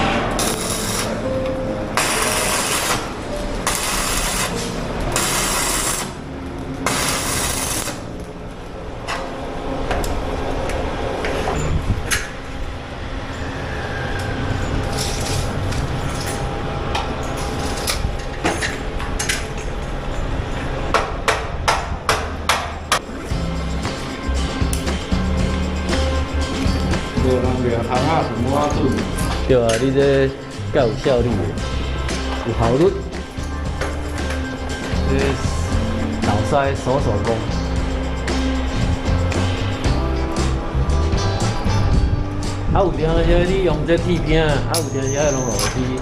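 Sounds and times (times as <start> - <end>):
hissing bursts: 2.0 - 6.2.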